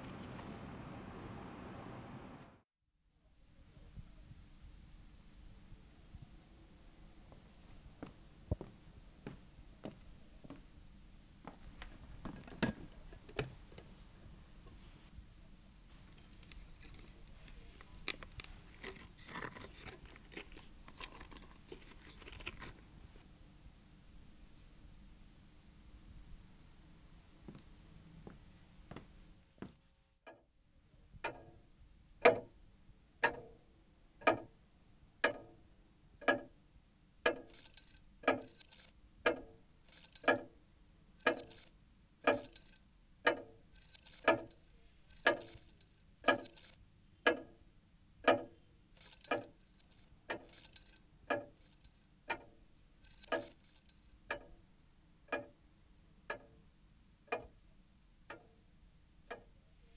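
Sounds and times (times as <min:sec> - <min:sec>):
clock ticking: 0:34.2 - 0:34.5, 0:35.2 - 0:35.6, 0:37.2 - 0:40.5, 0:41.2 - 0:47.6, 0:48.2 - 0:54.6, 0:55.3 - 0:55.6.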